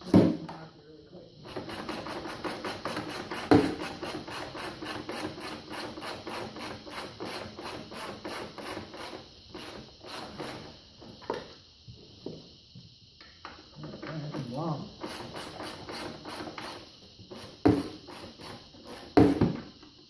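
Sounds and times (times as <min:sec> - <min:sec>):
ratchet clicking: 0:01.4 - 0:10.8, 0:14.4 - 0:19.9.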